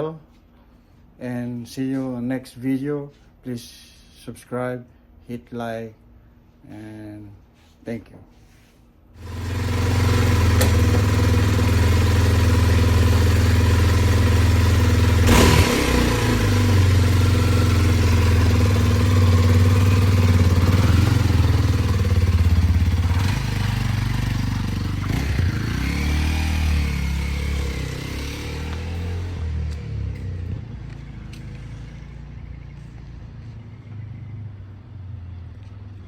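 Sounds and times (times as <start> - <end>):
motorcycle engine idling: 9.2 - 36.0.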